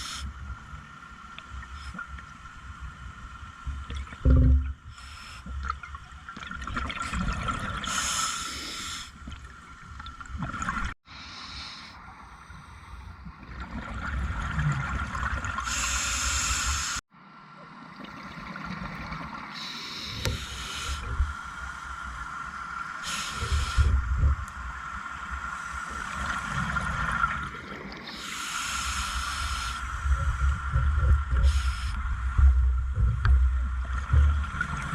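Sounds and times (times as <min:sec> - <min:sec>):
diver breathing through regulator: 0:23.0 - 0:24.0, 0:28.1 - 0:30.3, 0:31.4 - 0:32.0.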